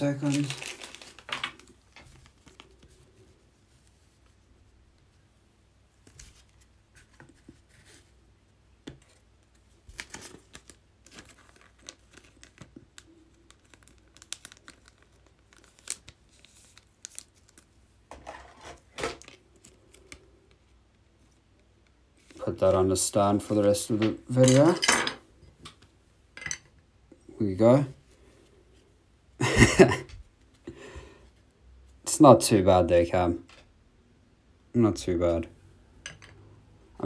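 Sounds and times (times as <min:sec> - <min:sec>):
plastic crinkling and rustling: 0:00.0 - 0:03.8, 0:09.0 - 0:20.3.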